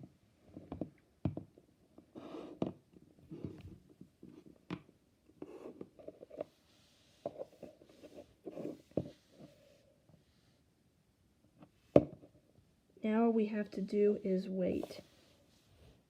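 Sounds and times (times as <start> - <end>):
small objects handled on a surface: 2.0 - 10.5, 14.7 - 16.0.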